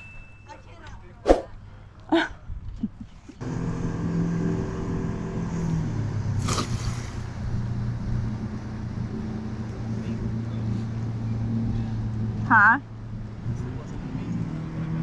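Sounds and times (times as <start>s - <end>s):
boat engine running: 3.4s - 15.0s.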